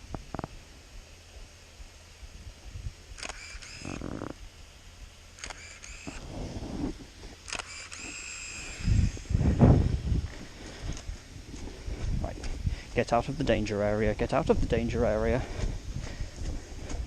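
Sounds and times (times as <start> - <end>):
camera shutter click and motor whir: 3.1 - 4.4, 5.3 - 6.2, 7.4 - 9.2
camera handling noise: 3.2 - 4.4, 5.4 - 6.2, 7.4 - 9.2.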